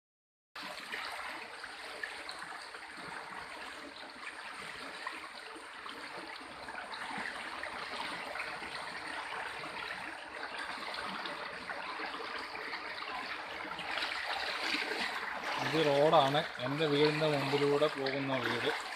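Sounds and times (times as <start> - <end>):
floodwater flowing: 0.6 - 18.9.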